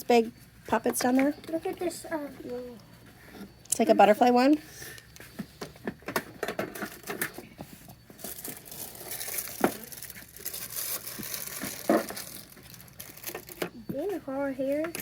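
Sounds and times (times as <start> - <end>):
packaging crinkling and rustling: 8.2 - 13.8.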